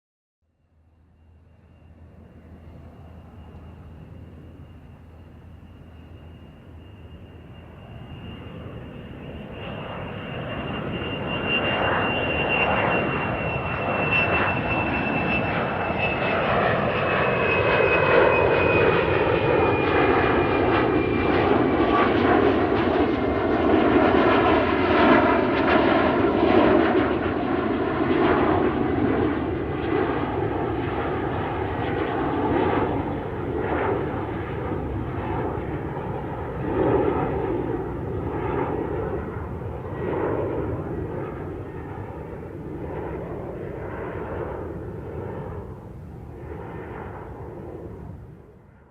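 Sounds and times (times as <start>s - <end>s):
aeroplane engines roaring: 0.6s - 48.9s
thin high whine: 0.7s - 22.7s.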